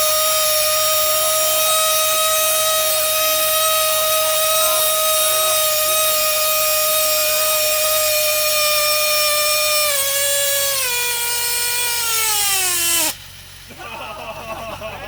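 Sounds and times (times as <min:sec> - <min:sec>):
rc car engine screaming: 0:07.3 - 0:13.2.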